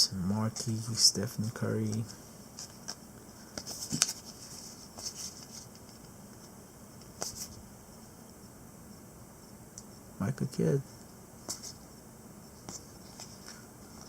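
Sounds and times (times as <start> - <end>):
trading cards being handled: 0.5 - 7.6.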